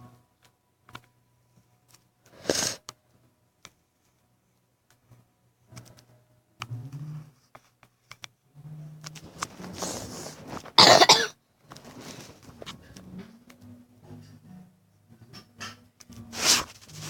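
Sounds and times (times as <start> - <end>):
person sneezing: 2.4 - 2.8, 10.8 - 11.3.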